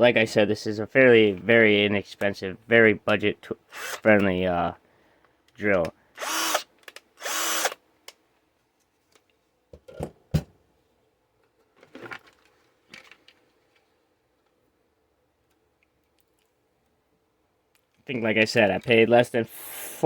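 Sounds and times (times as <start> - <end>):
cordless drill whirring: 3.7 - 4.1, 6.2 - 7.8.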